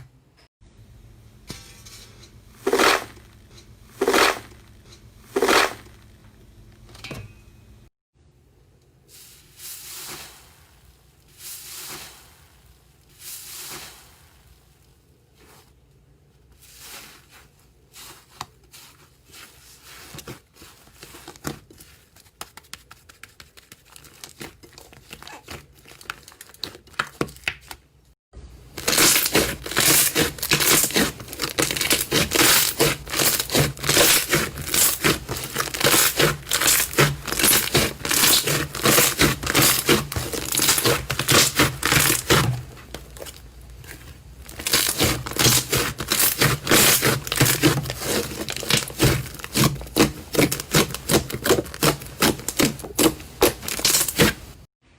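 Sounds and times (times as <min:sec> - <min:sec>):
slime squelching: 0:28.7 - 0:54.6
slime stretching and pressing: 0:28.8 - 0:54.5.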